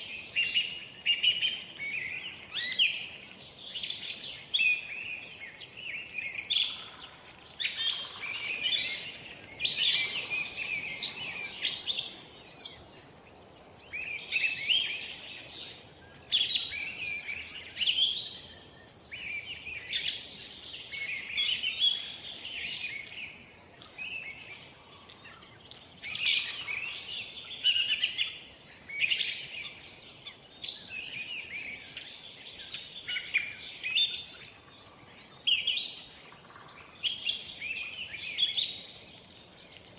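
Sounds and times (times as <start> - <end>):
faint steady hiss: 0.0 - 39.9
songbirds singing and chirping: 0.0 - 39.9.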